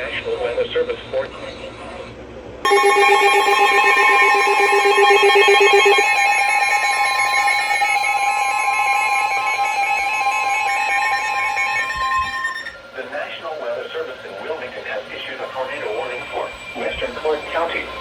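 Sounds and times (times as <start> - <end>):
low beeping tone: 2.7 - 12.8
overlapping alarm tones: 2.7 - 12.8.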